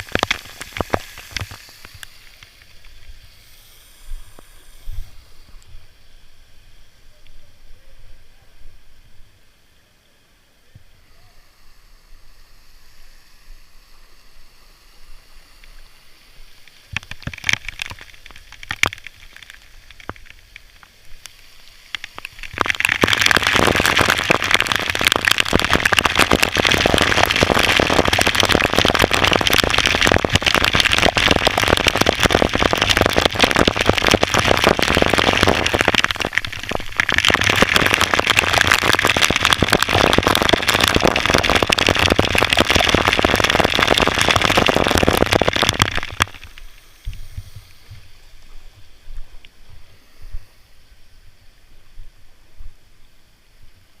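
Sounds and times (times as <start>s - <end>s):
water spattering: 0.0s - 3.1s, 16.7s - 47.6s.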